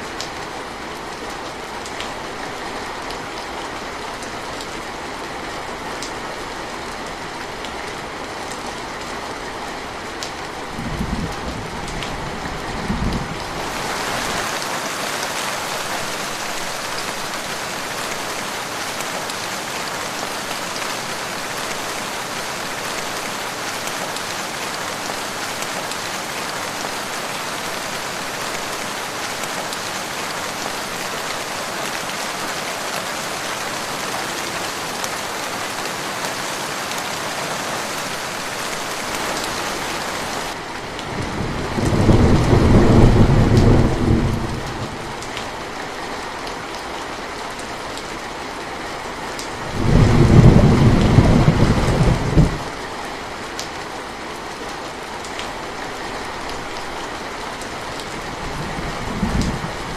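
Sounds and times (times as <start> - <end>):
rain falling: 0.0 - 59.9
thunder rumbling: 41.2 - 45.1, 49.7 - 52.7.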